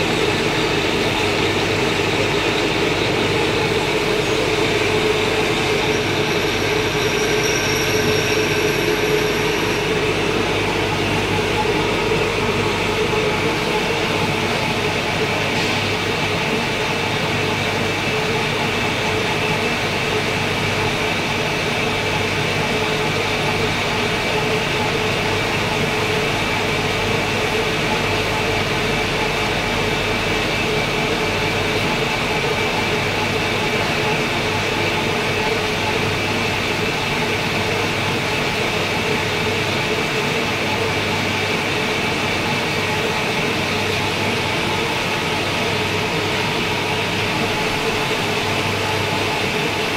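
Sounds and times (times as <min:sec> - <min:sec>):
steady high tone: 0:00.0 - 0:15.4
lathe machine humming: 0:00.0 - 0:49.9.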